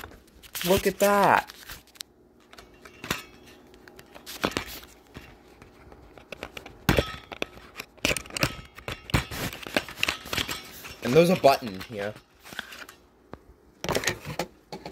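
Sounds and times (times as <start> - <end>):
packaging rustling: 0.0 - 2.5.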